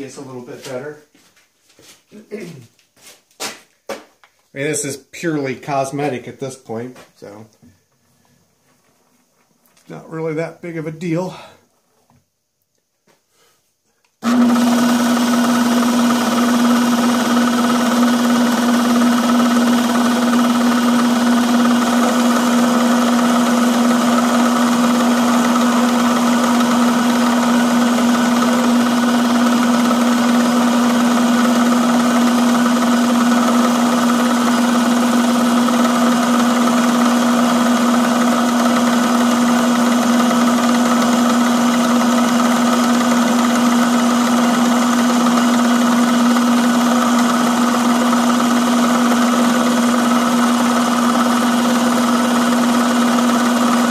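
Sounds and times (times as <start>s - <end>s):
electric motor humming: 14.2s - 53.9s.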